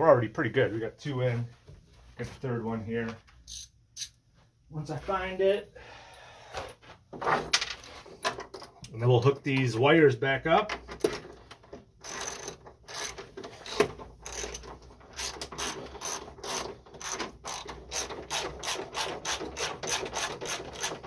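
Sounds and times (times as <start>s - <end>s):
ratchet wrench clicking: 3.5s - 4.2s, 12.0s - 21.0s.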